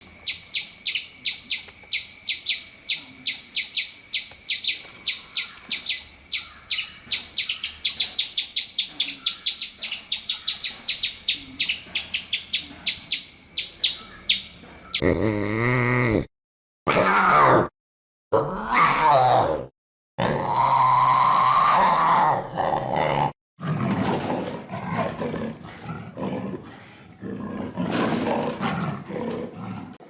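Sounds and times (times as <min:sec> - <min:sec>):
animal chirping calls: 0:00.2 - 0:15.1.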